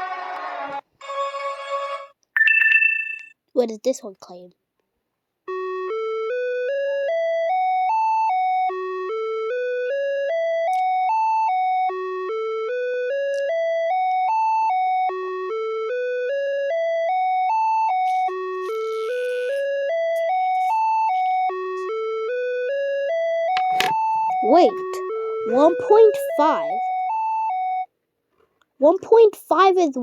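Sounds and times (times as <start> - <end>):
electronic tone climbing a scale: 5.5 - 27.9.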